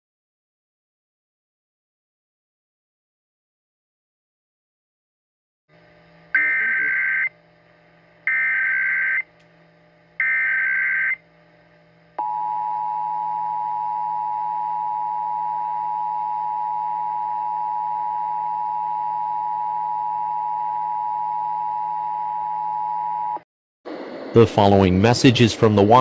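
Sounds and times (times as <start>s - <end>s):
digital data bursts: 6.4s - 7.3s, 8.3s - 9.2s
two-tone attention signal: 6.4s - 7.3s.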